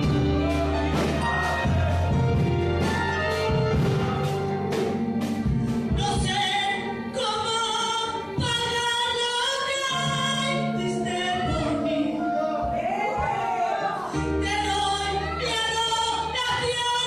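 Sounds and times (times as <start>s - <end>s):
drum strikes: 0.0s - 6.6s
worship band playing: 0.0s - 17.0s.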